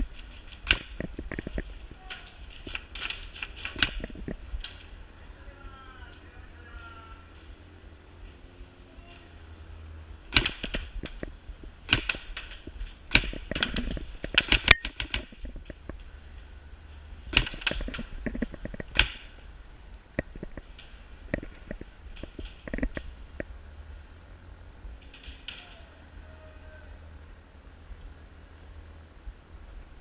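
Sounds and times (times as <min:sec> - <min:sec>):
airsoft guns firing: 0:10.3 - 0:11.2, 0:11.9 - 0:15.4.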